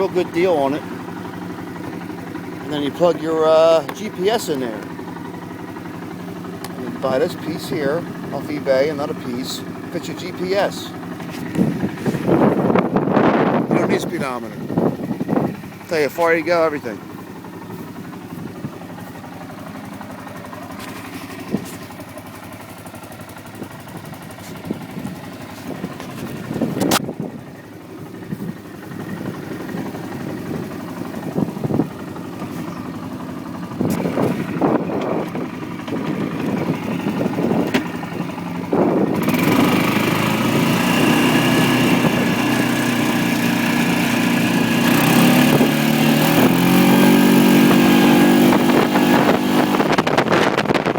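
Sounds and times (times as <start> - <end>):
atv engine idling: 0.0 - 50.9
sharp engine knocks: 33.7 - 39.7.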